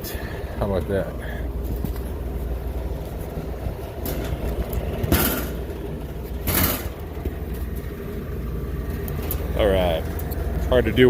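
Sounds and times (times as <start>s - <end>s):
compressor humming: 0.0s - 11.0s.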